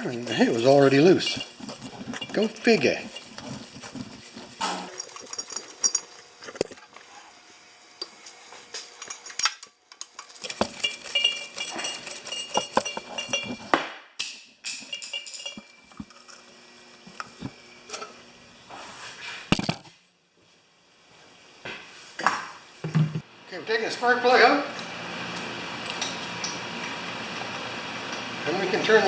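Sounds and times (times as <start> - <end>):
metal tools and parts clinking: 4.9 - 13.6, 14.6 - 16.4.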